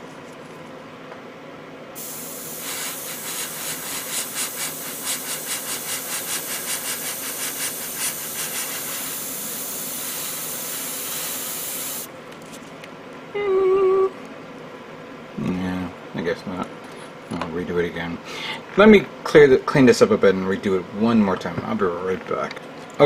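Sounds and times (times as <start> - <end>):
airbrush spraying air hiss: 2.0 - 12.1.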